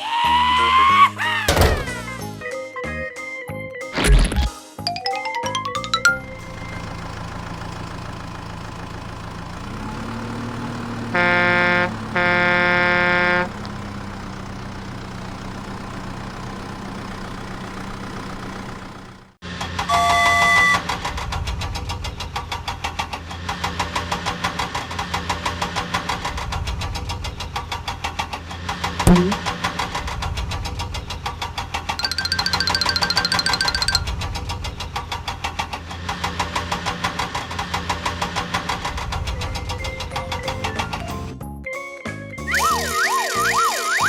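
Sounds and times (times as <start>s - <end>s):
engine with fast even pulse: 6.2s - 21.4s, 29.1s - 29.5s
horn honks: 11.0s - 13.8s, 19.9s - 20.8s
cartoon engine running: 11.1s - 13.6s, 29.1s - 29.4s, 32.0s - 34.3s, 42.4s - 44.0s
short beep: 29.1s - 29.4s.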